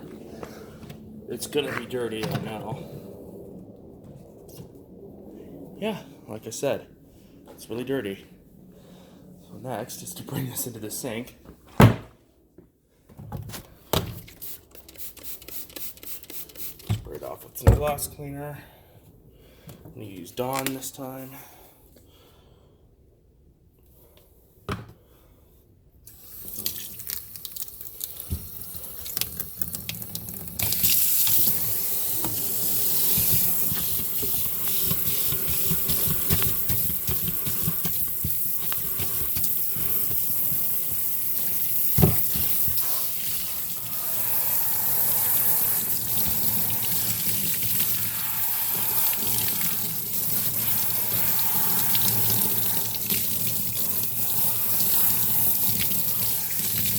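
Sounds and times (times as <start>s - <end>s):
tap water running: 26.2s - 56.9s.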